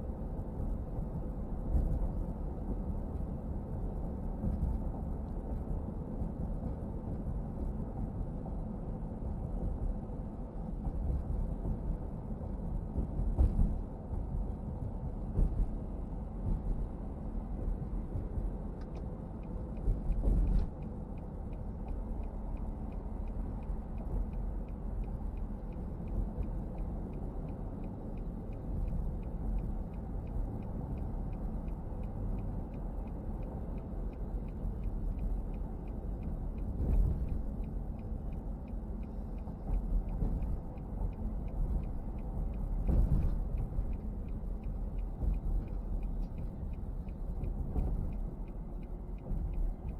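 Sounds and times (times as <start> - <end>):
car engine and road rumble: 0.0 - 49.9
regular light ticking: 18.8 - 49.9.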